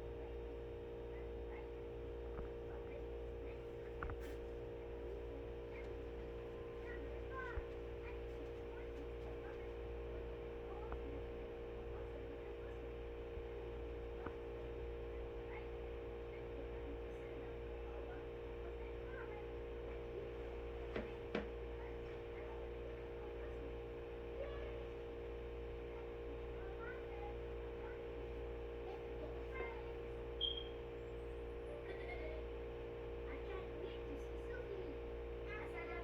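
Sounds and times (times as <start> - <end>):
electrical hum: 0.0 - 36.0
faint short chirps: 30.4 - 30.8.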